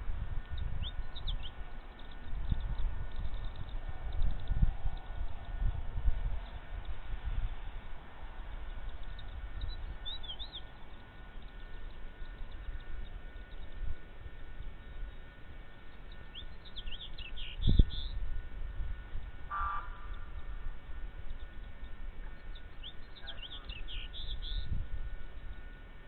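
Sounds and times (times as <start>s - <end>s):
eagle chattering call: 19.4s - 20.8s, 21.4s - 24.8s.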